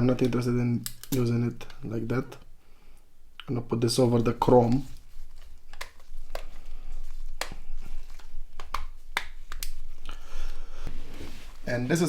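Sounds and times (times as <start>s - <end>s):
plastic parts clicking together: 0.1s - 1.3s.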